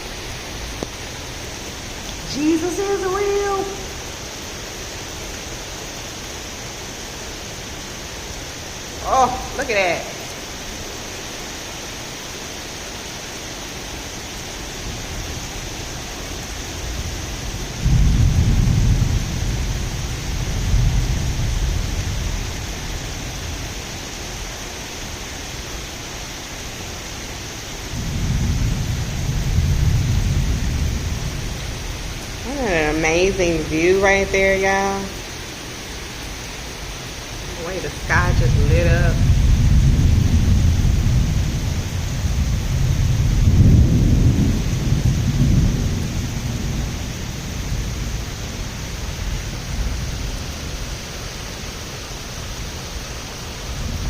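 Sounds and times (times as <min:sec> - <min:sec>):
steady rain: 0:00.0 - 0:54.0
rolling thunder: 0:14.8 - 0:24.4, 0:27.9 - 0:33.4, 0:38.1 - 0:51.2, 0:53.5 - 0:54.0.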